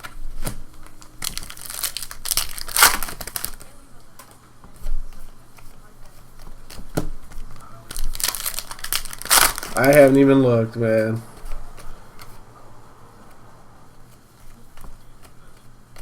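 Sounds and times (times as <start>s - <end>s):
wrapper tearing and crinkling: 0.4s - 3.7s, 7.9s - 10.3s.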